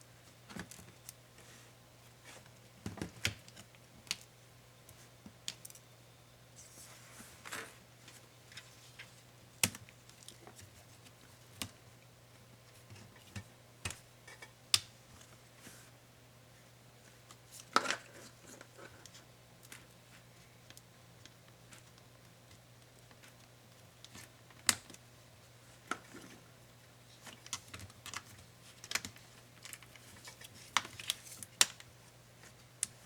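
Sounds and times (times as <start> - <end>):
faint low hum: 0.0 - 33.0.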